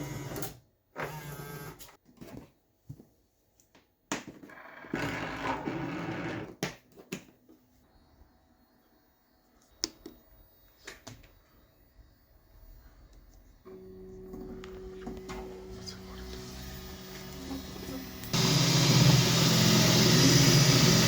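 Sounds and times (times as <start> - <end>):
printer motors running: 13.2 - 21.0.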